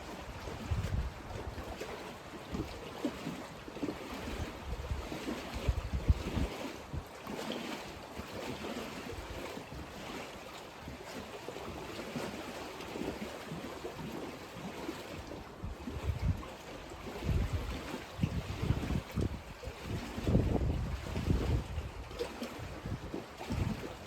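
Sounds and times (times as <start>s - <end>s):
wind buffeting microphone: 0.0s - 1.8s, 4.2s - 7.1s, 15.6s - 16.4s, 17.0s - 24.0s.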